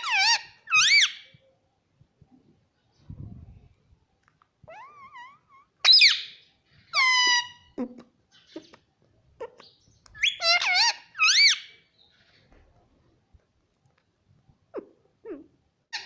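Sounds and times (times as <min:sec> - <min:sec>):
parakeet squawking: 0:00.0 - 0:01.2, 0:04.7 - 0:07.8, 0:09.6 - 0:11.8.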